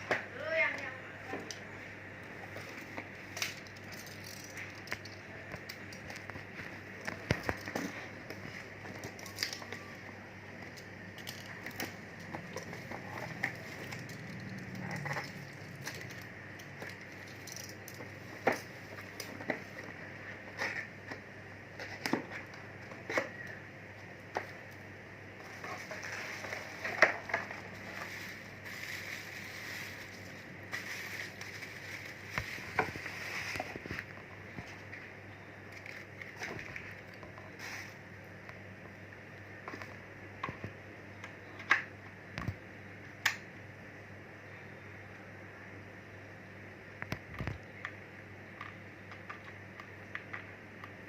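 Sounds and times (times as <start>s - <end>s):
faint steady hum: 0.0s - 51.0s
objects clicking and rustling: 2.5s - 21.2s.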